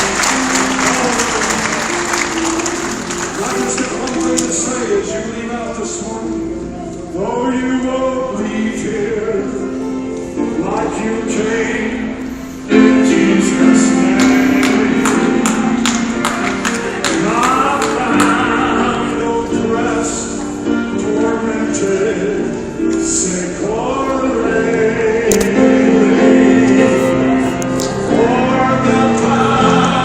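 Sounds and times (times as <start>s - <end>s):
gospel worship music: 0.0s - 30.0s
several voices singing together: 12.7s - 16.0s, 23.0s - 30.0s.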